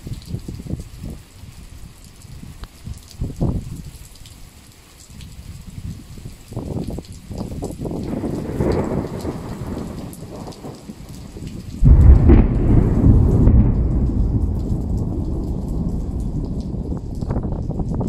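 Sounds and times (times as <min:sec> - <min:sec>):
heavy rain: 0:00.0 - 0:18.0
thunderclap rumbling: 0:08.0 - 0:18.0.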